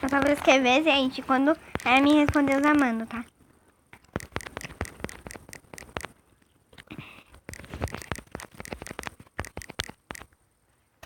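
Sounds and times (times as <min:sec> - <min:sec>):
fingers tapping phone touchscreen: 0:00.0 - 0:00.6, 0:01.6 - 0:03.2, 0:04.0 - 0:10.4.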